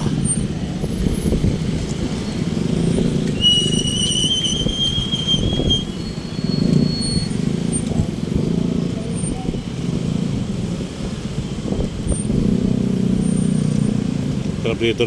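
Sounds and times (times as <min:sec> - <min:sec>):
street traffic rumbling: 0:00.0 - 0:15.0
high-pitched squeal: 0:02.2 - 0:07.9.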